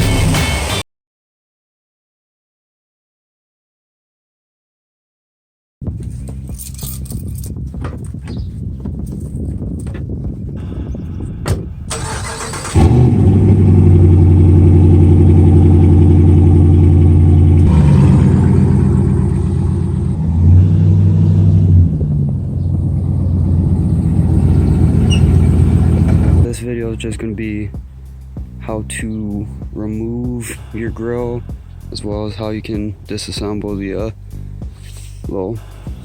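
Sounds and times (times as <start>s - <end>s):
truck engine running: 5.8s - 36.0s
pickup truck engine cranking: 5.9s - 10.5s, 11.2s - 29.6s.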